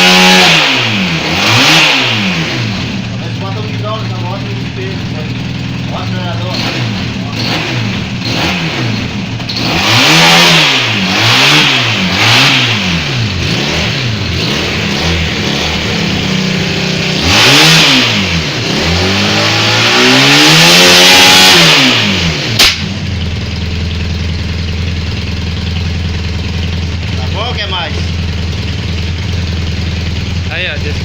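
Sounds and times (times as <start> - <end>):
motorcycle engine idling and revving: 0.0 - 31.0.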